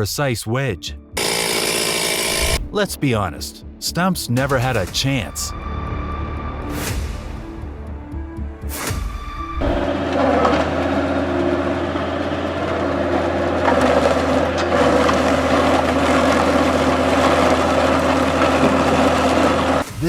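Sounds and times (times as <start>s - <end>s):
shredder engine humming: 1.2s - 2.6s, 9.6s - 19.9s
wood crunching and splintering: 9.7s - 19.9s.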